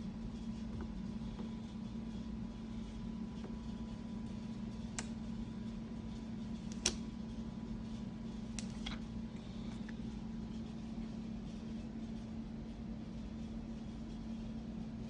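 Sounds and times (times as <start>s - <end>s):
steady low hum: 0.0s - 15.0s
computer mouse clicks: 6.6s - 7.0s.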